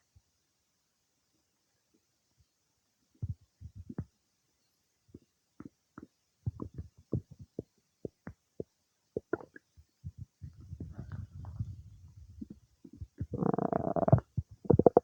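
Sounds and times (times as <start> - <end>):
stomach gurgling: 3.2 - 4.1, 5.6 - 15.0.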